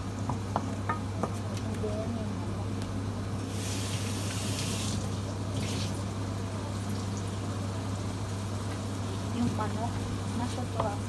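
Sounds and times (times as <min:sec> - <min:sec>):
water running from tap: 0:03.5 - 0:06.0.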